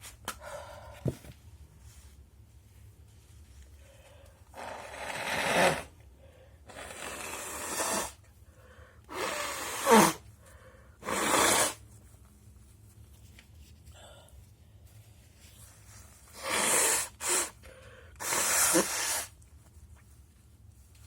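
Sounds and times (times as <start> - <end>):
person blowing nose: 4.5 - 6.0, 6.7 - 8.2, 9.1 - 10.3, 11.0 - 11.8, 16.2 - 17.6, 18.2 - 19.4.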